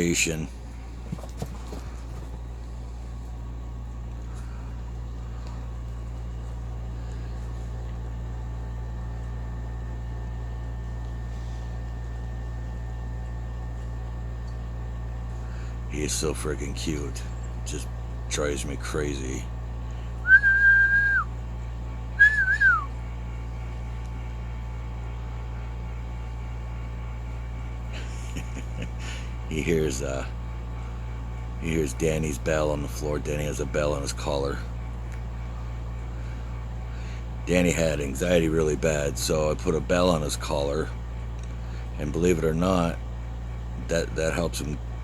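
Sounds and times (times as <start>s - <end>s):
steady low hum: 0.0s - 45.0s
person whistling: 20.2s - 21.3s, 22.2s - 22.9s.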